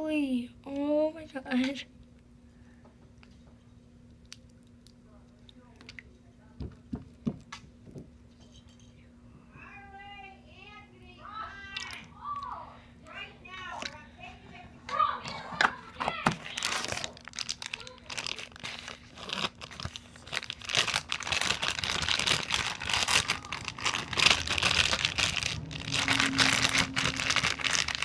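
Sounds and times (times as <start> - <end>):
slime crinkling and crackling: 15.8 - 28.0.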